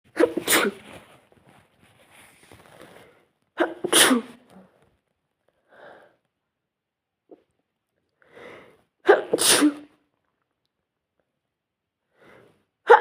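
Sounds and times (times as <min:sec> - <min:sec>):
person sneezing: 0:00.1 - 0:00.9, 0:03.6 - 0:04.4, 0:09.0 - 0:10.0.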